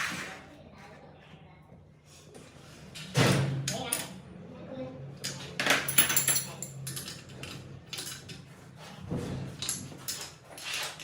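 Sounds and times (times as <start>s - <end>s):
metal tools clinking and knocking: 5.2s - 8.4s, 9.6s - 11.0s.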